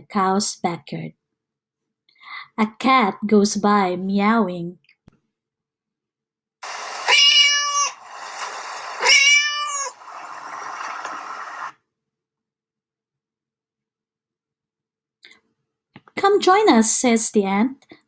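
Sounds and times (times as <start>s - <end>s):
cat meowing: 6.6s - 11.7s
faint recording hiss: 6.6s - 11.9s.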